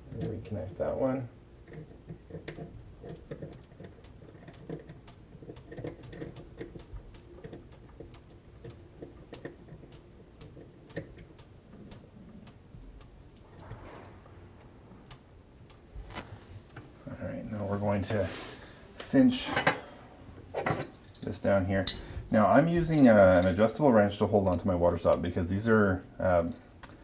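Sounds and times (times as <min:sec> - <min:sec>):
plumbing fittings clicking and tapping: 0:01.6 - 0:13.7.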